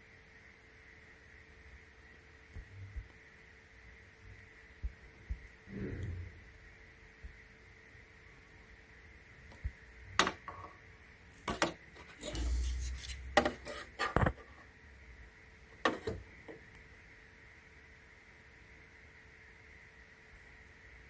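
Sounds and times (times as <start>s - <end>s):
rubbing scrape: 11.5s - 14.6s.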